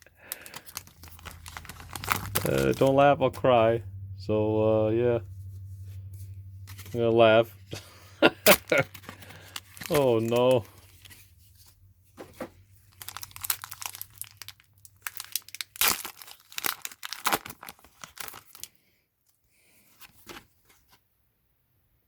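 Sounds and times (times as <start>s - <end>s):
foil wrapper tearing and crinkling: 0.0s - 3.0s, 8.3s - 11.3s, 12.8s - 18.8s.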